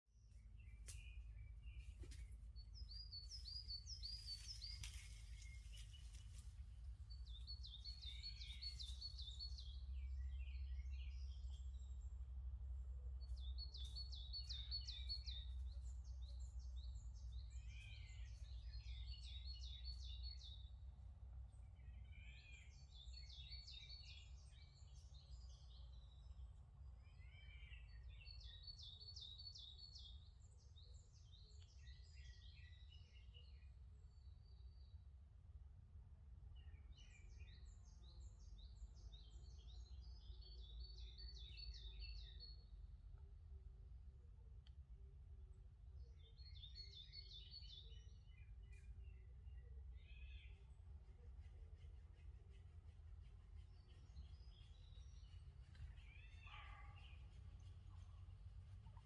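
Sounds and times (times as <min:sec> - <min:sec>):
faint low rumble: 0:00.0 - 0:29.0, 0:47.7 - 0:59.0.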